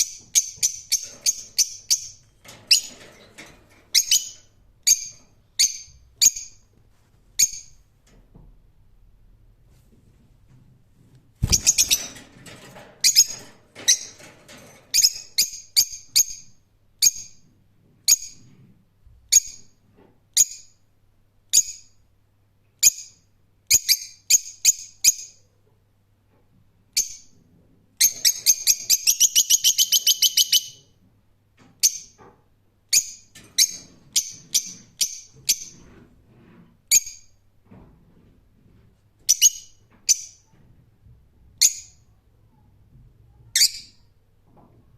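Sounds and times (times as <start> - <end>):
bird chirping: 3.9 - 6.6, 11.4 - 12.2, 28.0 - 30.9.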